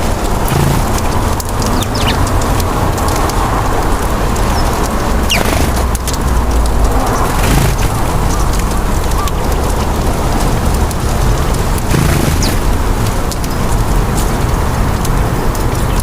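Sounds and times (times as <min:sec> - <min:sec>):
low outdoor rumble: 0:00.0 - 0:16.0
bird falling calls: 0:00.5 - 0:02.4, 0:04.5 - 0:05.8, 0:11.9 - 0:12.8.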